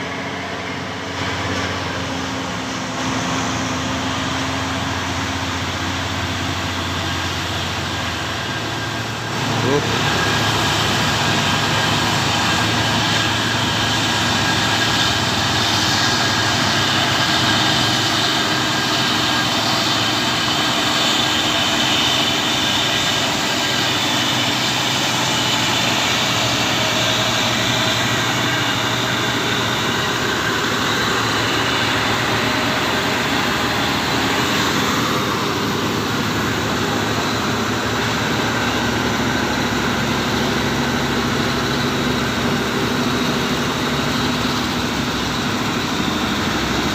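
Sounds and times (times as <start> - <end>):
diesel truck engines under load: 0.0 - 46.9.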